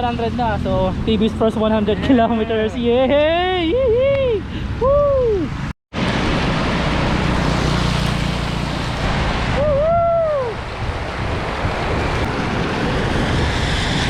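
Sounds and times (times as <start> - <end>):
wind buffeting microphone: 2.7 - 14.0
rising-and-falling whoop: 4.8 - 5.6, 9.5 - 10.7.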